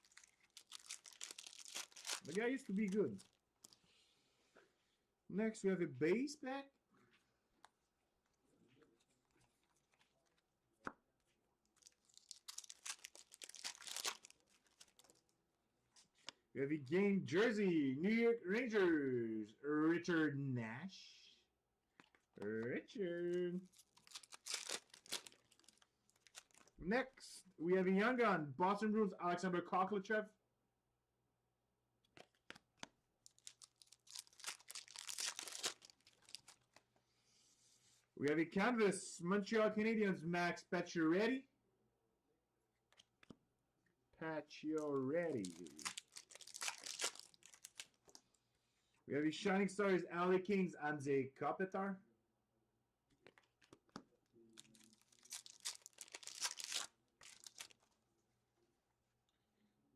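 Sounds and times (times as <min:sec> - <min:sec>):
wrapper crinkling and tearing: 0:00.0 - 0:03.8, 0:11.6 - 0:15.3, 0:23.7 - 0:26.8, 0:32.2 - 0:36.8, 0:45.3 - 0:48.4, 0:54.5 - 0:58.0.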